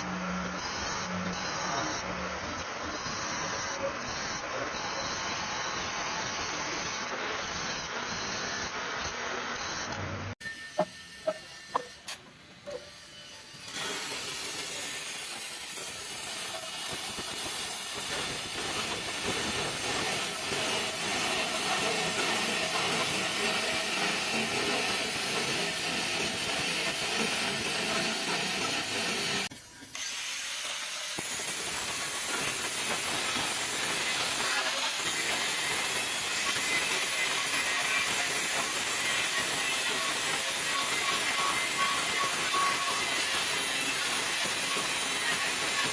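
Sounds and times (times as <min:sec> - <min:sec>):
welding arc crackling hiss: 0:00.0 - 0:12.2, 0:12.8 - 0:45.9.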